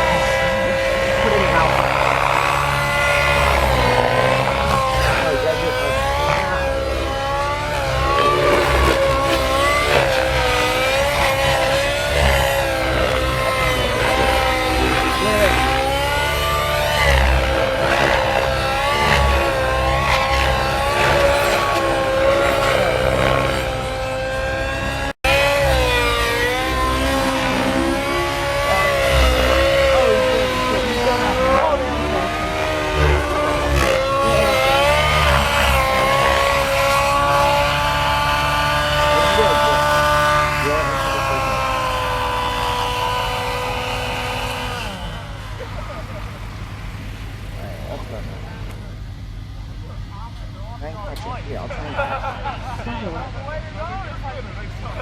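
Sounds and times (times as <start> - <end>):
radio-controlled helicopter whine: 0.0 - 55.0.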